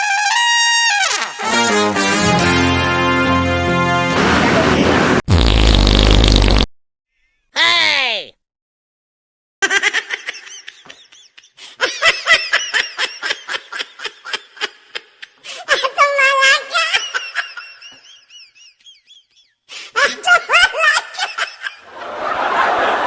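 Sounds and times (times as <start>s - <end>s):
person laughing: 18.3s - 21.7s.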